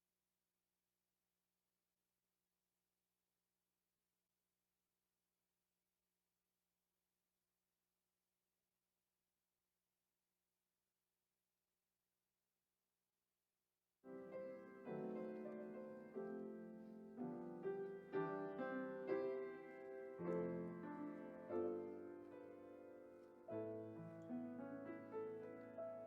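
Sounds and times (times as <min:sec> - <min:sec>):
piano playing slow chords: 0:14.1 - 0:26.0.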